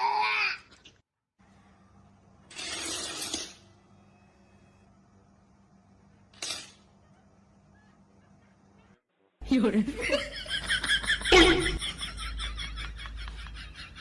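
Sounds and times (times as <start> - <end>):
faint steady hum: 3.6 - 9.0.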